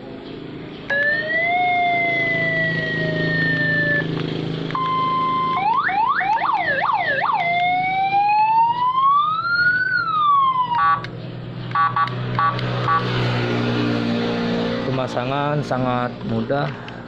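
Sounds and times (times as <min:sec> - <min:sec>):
electronic siren cycling tones: 0:00.9 - 0:11.1, 0:11.7 - 0:13.1.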